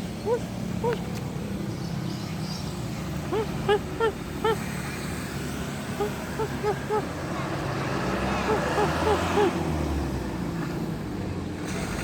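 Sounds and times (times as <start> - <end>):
cats meowing: 3.3 - 4.7, 6.0 - 7.1, 8.5 - 9.6.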